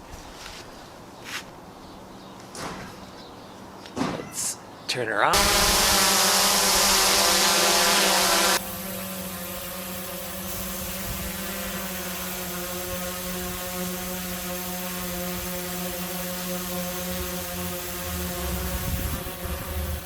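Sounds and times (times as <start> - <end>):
drone propellers buzzing hum: 5.3 - 20.0.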